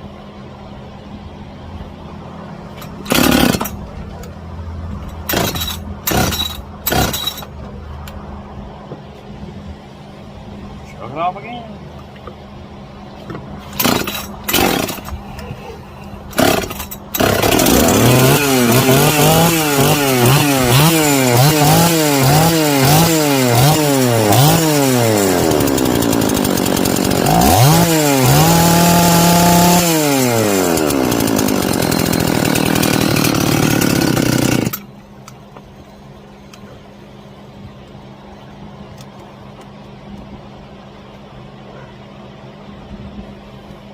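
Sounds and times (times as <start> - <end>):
chainsaw starter pulls: 2.8 - 3.8, 5.1 - 7.5, 13.7 - 15.2, 16.3 - 34.9
chainsaw engine revving: 3.0 - 3.8, 5.2 - 7.4, 13.7 - 15.2, 16.3 - 34.9.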